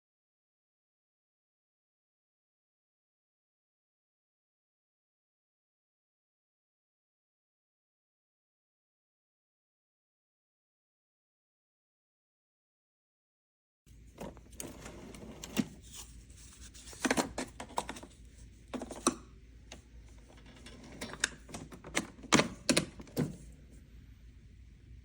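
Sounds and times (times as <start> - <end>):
low steady hum: 13.9 - 25.0.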